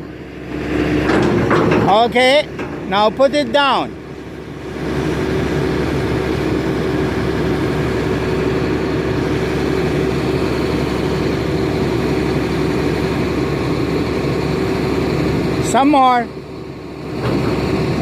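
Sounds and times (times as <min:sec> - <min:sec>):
excavator diesel engine droning: 0:00.0 - 0:18.0.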